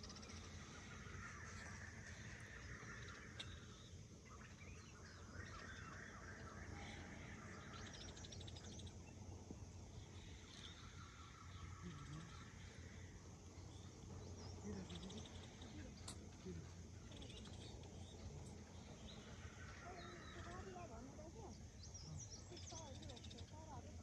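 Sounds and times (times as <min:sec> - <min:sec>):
birds chirping and calling: 0:00.0 - 0:23.9
low background hum: 0:00.0 - 0:24.0
bird trill: 0:17.0 - 0:23.7.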